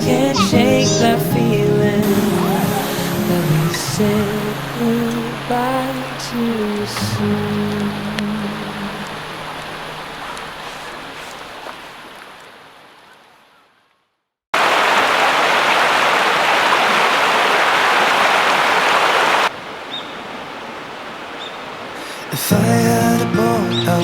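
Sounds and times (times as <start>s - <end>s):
background music: 0.0s - 6.2s
outdoor hiss: 0.0s - 12.8s, 14.6s - 19.6s
rushing water: 0.0s - 13.6s, 14.6s - 24.0s.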